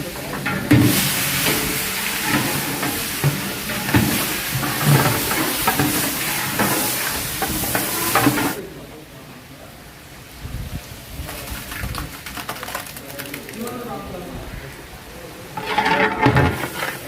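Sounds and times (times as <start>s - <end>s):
meat sizzling in a pot: 0.0s - 8.6s, 15.6s - 17.0s
stirring scraping and knocking: 0.0s - 8.6s, 15.6s - 17.0s.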